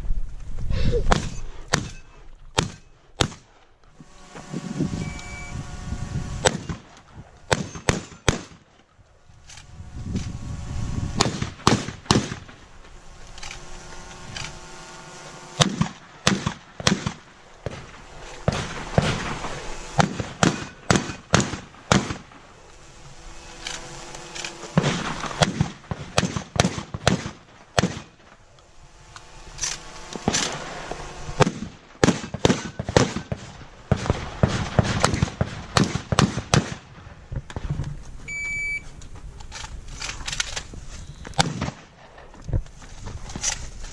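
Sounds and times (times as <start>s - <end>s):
shotgun shots: 1.1s - 3.6s, 6.4s - 8.8s, 11.1s - 12.7s, 15.5s - 22.5s, 24.7s - 28.3s, 30.2s - 37.1s, 41.4s - 42.2s.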